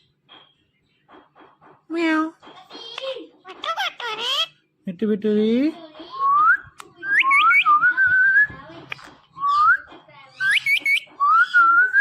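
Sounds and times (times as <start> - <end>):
parrot whistling: 6.2 - 8.5, 9.4 - 12.0.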